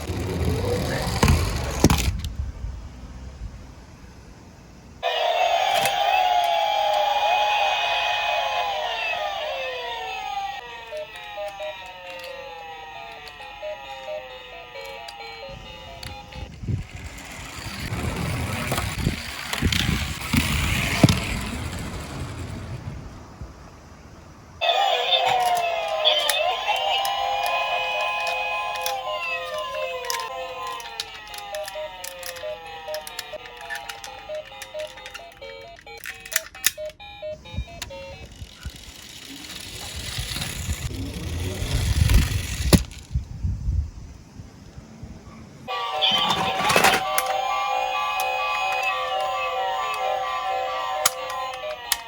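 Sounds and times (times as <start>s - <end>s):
toy cars rolling rumble: 0.0s - 2.4s, 5.0s - 23.2s, 24.6s - 36.8s, 37.6s - 43.3s, 45.4s - 52.0s.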